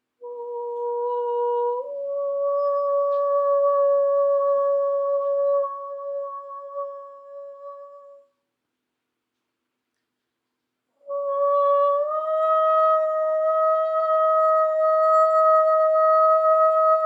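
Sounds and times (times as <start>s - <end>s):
voice holding a long high note: 0.2s - 8.3s, 11.0s - 17.0s.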